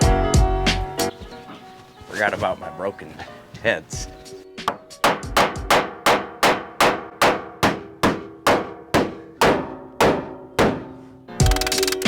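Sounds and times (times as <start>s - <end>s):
hammer striking metal: 4.7s - 11.0s.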